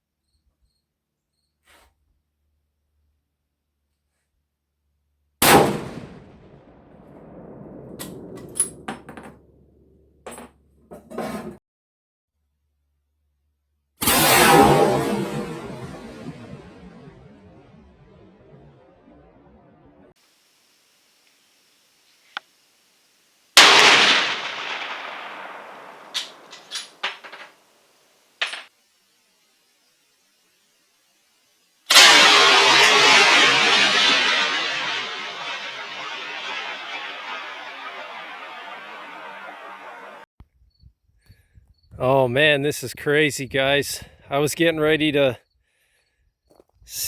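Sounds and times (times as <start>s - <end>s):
rifle shot with echo: 5.4s - 9.6s, 23.6s - 27.5s, 31.9s - 40.2s
sharp metallic clicks: 23.6s - 27.4s.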